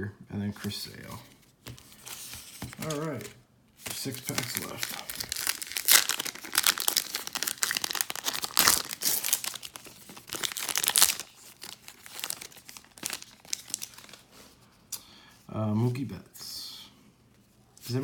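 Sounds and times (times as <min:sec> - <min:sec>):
wrapper tearing and crinkling: 0:02.0 - 0:14.3.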